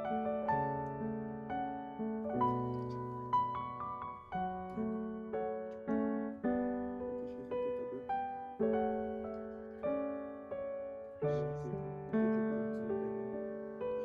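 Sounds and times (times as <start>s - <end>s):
soft solo piano music: 0.0s - 14.0s.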